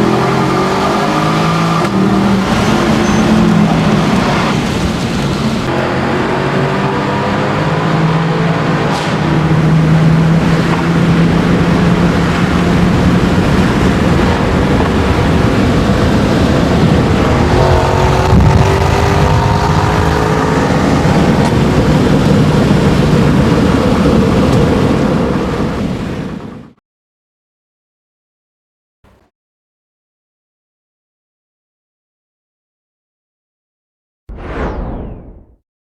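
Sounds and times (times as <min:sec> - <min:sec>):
car engine running loud: 0:00.0 - 0:26.8.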